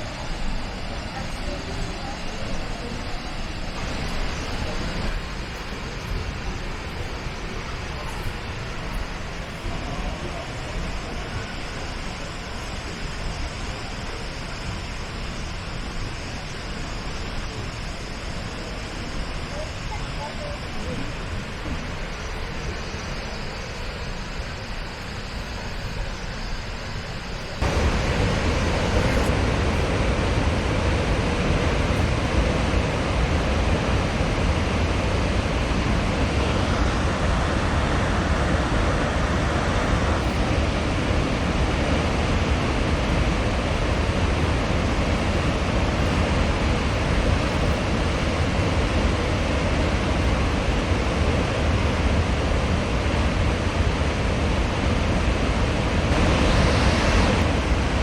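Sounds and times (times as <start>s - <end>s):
waterfall rushing: 27.6s - 58.0s.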